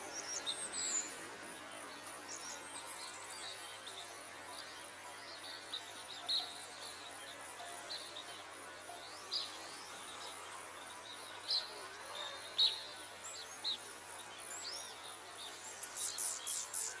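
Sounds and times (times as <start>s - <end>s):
bird chirps: 14.6s - 17.0s.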